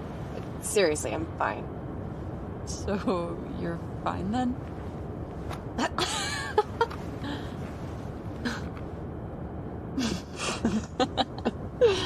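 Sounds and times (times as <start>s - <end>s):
car cabin road rumble: 0.0s - 12.0s.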